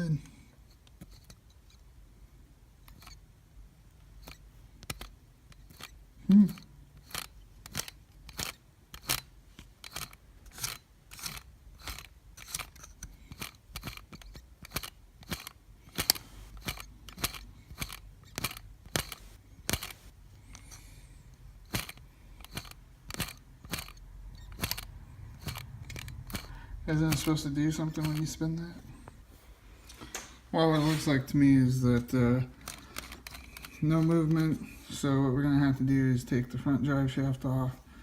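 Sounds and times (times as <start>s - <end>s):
plastic gear clicks: 2.8s - 3.2s, 4.2s - 20.9s, 21.6s - 28.7s, 32.0s - 35.0s.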